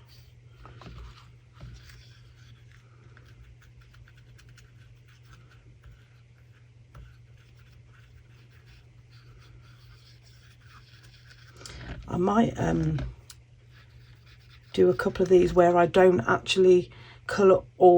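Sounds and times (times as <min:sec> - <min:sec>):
brush scratching and rubbing: 0:00.0 - 0:15.6
steady low hum: 0:00.0 - 0:17.9.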